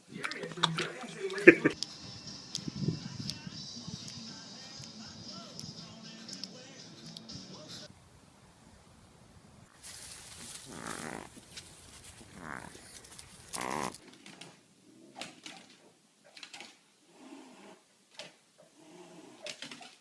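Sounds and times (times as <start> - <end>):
animal crying: 10.7 - 11.3, 12.3 - 14.0.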